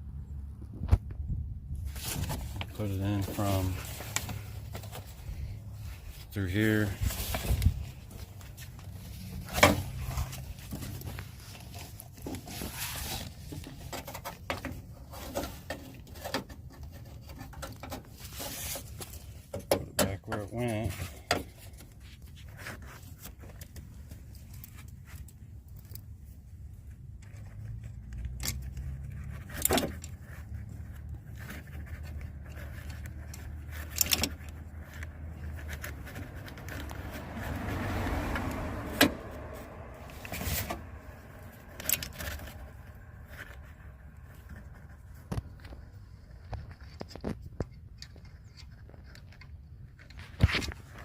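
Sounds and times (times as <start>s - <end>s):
low steady rumble: 20.2s - 50.2s.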